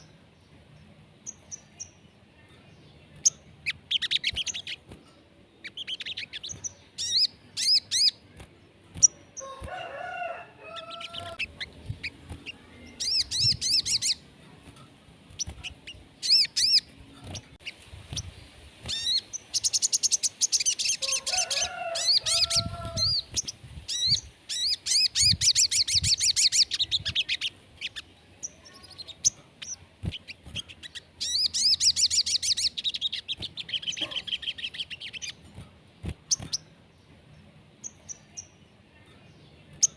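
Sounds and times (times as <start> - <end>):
bird chattering trills: 3.2 - 4.9, 5.6 - 8.3, 15.4 - 18.3, 18.9 - 35.4.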